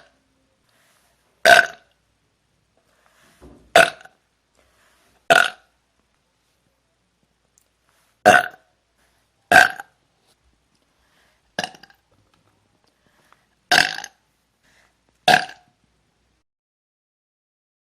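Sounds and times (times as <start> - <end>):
woman burping: 1.4 - 1.8, 3.7 - 4.1, 5.3 - 5.6, 9.5 - 9.9, 11.6 - 11.9, 13.7 - 14.2, 15.3 - 15.6.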